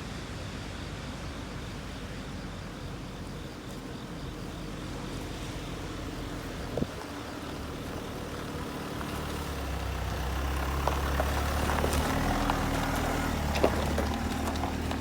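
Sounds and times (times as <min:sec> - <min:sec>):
vehicle engine running: 0:00.0 - 0:15.0.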